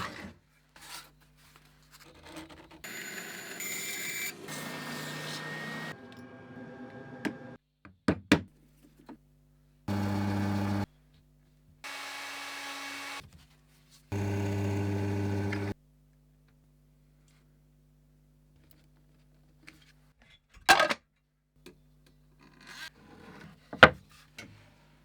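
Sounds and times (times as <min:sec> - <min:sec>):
power tool motor bursts: 0:09.9 - 0:10.9, 0:11.9 - 0:13.2, 0:14.1 - 0:15.8.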